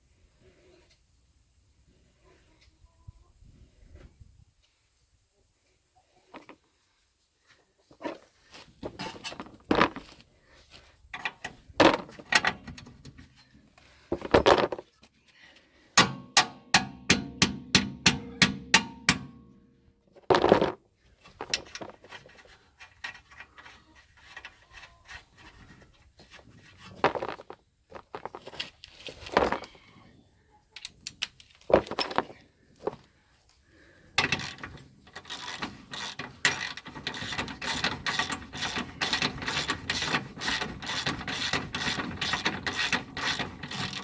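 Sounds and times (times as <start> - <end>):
metal tools knocking and clanking: 16.0 - 19.6, 21.4 - 22.1, 34.2 - 44.0
sharp evenly spaced metal strikes: 16.0 - 19.7.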